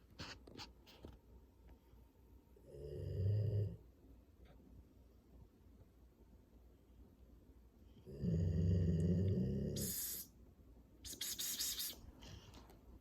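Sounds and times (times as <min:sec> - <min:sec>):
dog snoring: 0:08.1 - 0:09.8.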